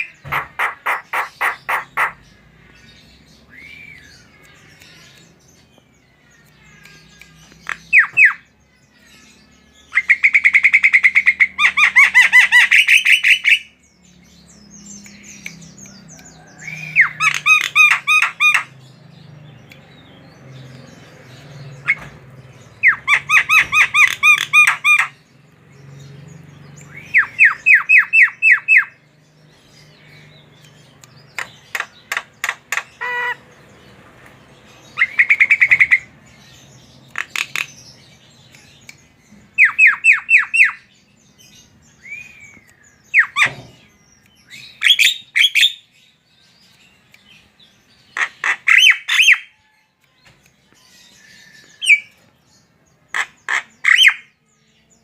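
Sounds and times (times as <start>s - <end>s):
myna harsh squawking: 0.0s - 2.2s.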